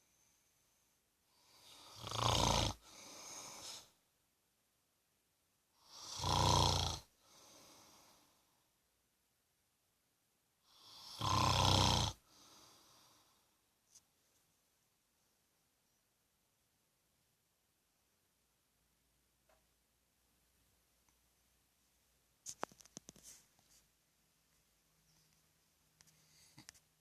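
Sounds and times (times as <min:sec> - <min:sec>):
man snoring: 0:01.4 - 0:03.8, 0:05.8 - 0:08.1, 0:10.7 - 0:12.9
soft breathing: 0:02.8 - 0:04.0, 0:07.2 - 0:08.7, 0:12.2 - 0:13.7, 0:25.0 - 0:26.9.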